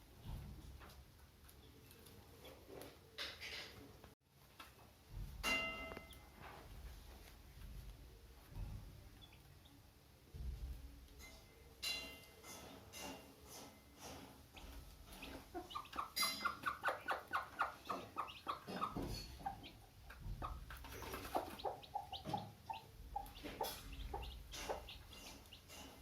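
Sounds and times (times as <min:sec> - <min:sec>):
hen clucking: 0:14.6 - 0:26.0.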